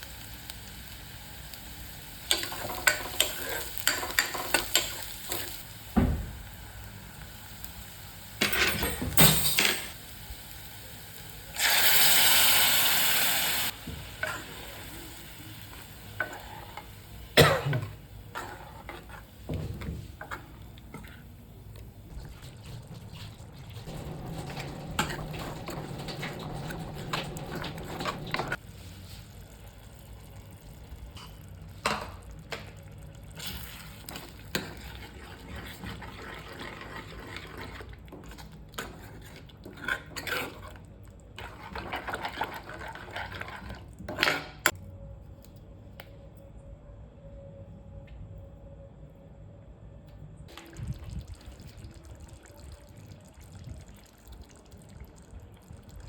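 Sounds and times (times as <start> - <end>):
food sizzling in hot fat: 0.0 - 19.5, 22.2 - 35.2
spatula scraping a pan: 2.4 - 5.6, 16.2 - 16.9, 18.3 - 19.4, 34.5 - 40.8.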